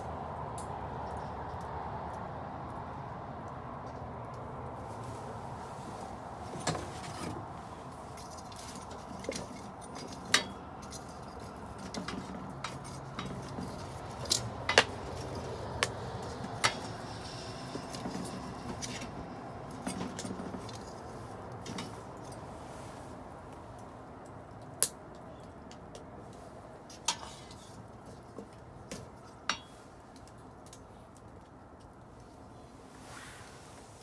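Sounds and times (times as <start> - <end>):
fire burning with low rush: 0.0 - 34.0
fire crackles and pops: 11.5 - 22.3.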